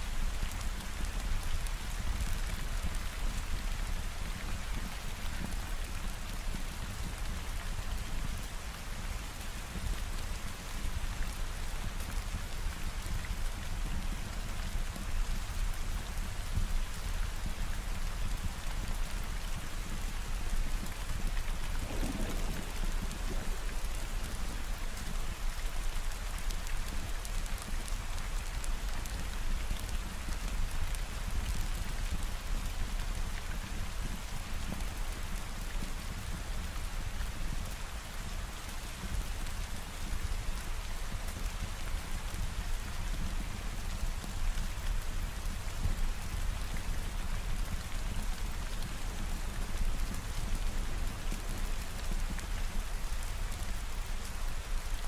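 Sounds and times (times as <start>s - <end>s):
steady rain falling: 0.0s - 55.0s
low rumble: 21.7s - 24.9s.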